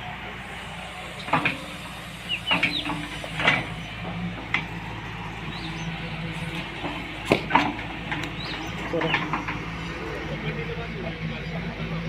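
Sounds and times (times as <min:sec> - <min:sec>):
sharp knocks: 0:06.8 - 0:08.3.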